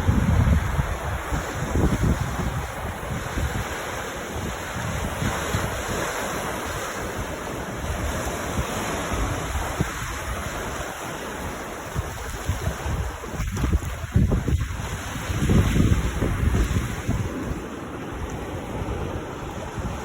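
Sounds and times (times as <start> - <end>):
waves washing onto beach: 0.0 - 20.0
wind buffeting microphone: 0.0 - 20.0.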